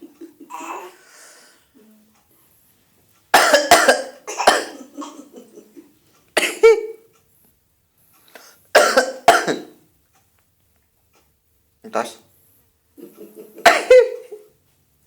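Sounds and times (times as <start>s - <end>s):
person coughing: 3.4s - 5.7s, 6.4s - 7.0s, 8.8s - 9.8s, 13.6s - 14.4s.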